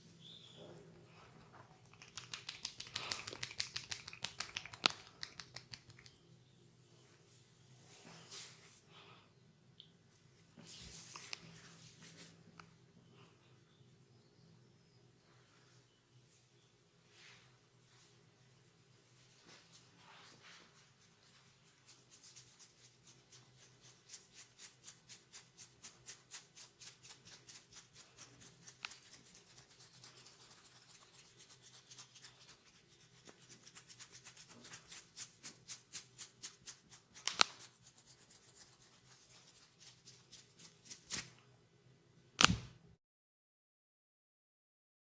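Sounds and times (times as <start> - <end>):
hands tapping in massage: 1.9 - 6.2.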